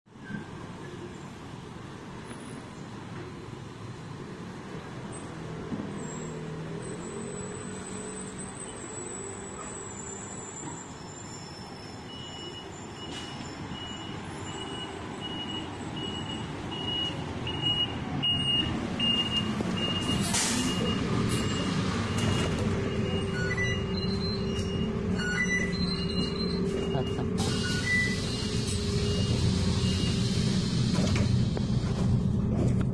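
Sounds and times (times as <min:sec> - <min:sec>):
bus engine running: 0:02.9 - 0:32.9
high electronic beep: 0:12.1 - 0:30.2.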